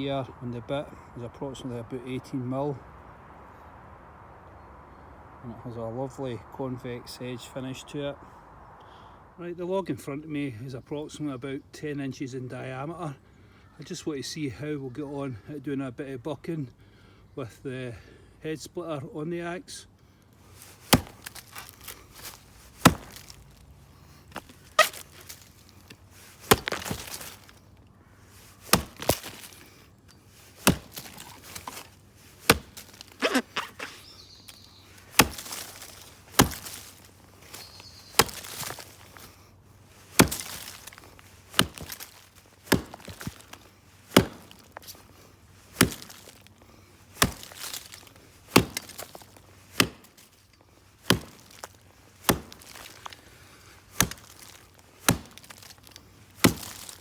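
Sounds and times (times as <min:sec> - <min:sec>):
wood splintering: 0:20.5 - 0:27.7, 0:28.3 - 0:57.0
axe chopping log: 0:20.6 - 0:23.6, 0:24.3 - 0:27.6, 0:28.6 - 0:29.7, 0:30.4 - 0:39.3, 0:40.0 - 0:46.5, 0:47.1 - 0:50.4, 0:51.0 - 0:57.0.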